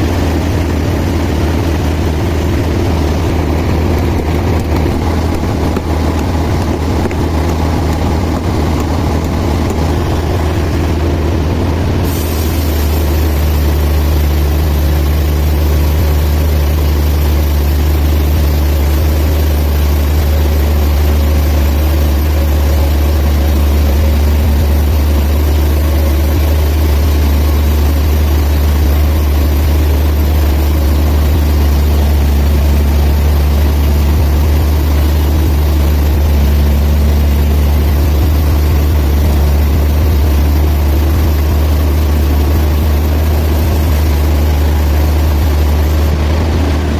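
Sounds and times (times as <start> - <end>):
band sawmill machine drone: 0.0 - 46.9
high hiss: 12.0 - 46.2.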